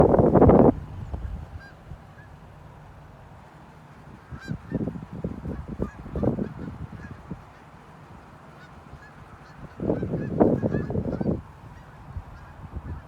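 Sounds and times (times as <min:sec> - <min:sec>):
geese honking: 0:01.5 - 0:02.4, 0:04.2 - 0:07.7, 0:08.6 - 0:13.0.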